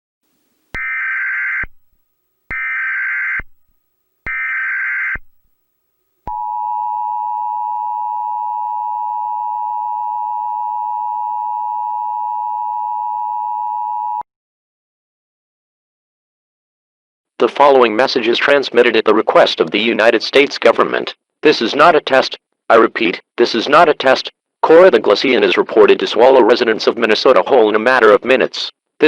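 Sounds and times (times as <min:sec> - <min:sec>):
digital data tone bursts: 0:04.3 - 0:05.4.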